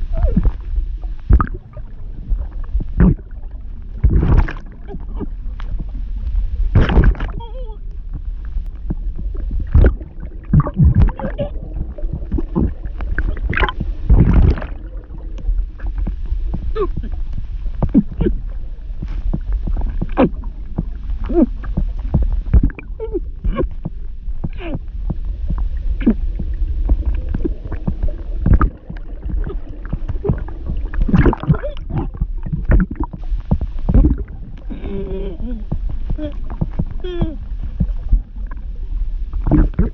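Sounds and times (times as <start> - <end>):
bubbling gurgles underwater: 0.0 - 39.9
low water rumble: 0.0 - 39.9
muffled strangled vocal sounds: 2.9 - 5.4, 9.8 - 15.3, 16.7 - 17.2, 17.8 - 18.5, 28.5 - 33.1, 33.9 - 37.5, 39.5 - 39.9
woman making muffled strained sounds: 4.8 - 5.3, 7.0 - 7.8, 10.6 - 11.6, 16.7 - 17.2, 22.9 - 23.8, 24.5 - 24.8, 31.2 - 32.2, 34.7 - 36.4, 37.0 - 37.4.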